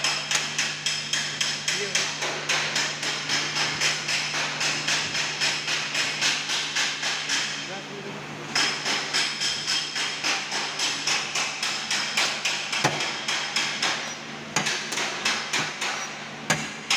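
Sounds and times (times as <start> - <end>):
hammer tapping on metal panel: 0.0 - 7.5, 8.5 - 16.9.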